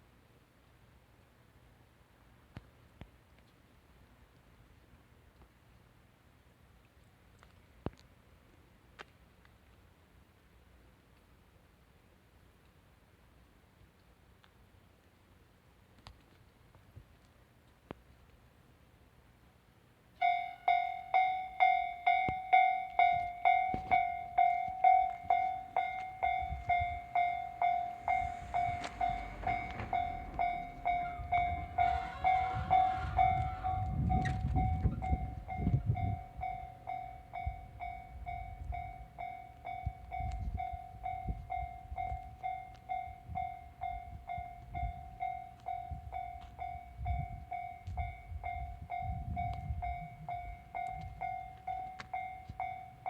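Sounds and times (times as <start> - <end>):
level-crossing warning bell: 20.2 - 53.0.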